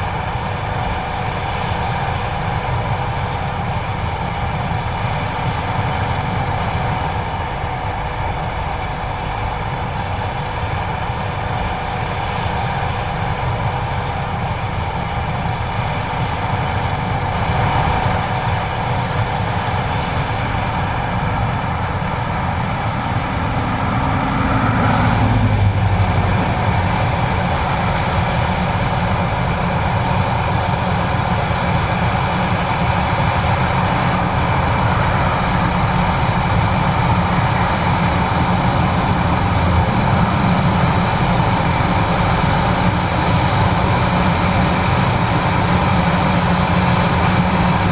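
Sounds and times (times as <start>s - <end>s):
combine harvester droning: 0.0s - 47.9s.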